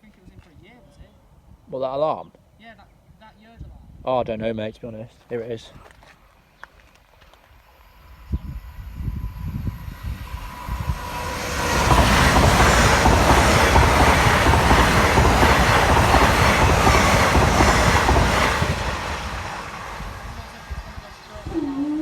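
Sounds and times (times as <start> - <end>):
train passing with rushing wheels: 7.5 - 22.0.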